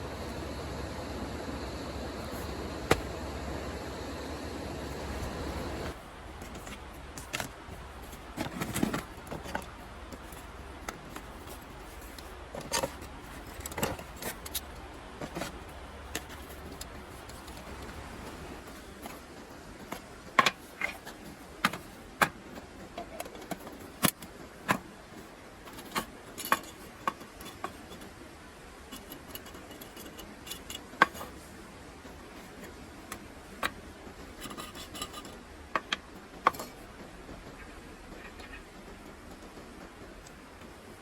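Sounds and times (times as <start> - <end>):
low steady hiss: 0.0 - 37.0.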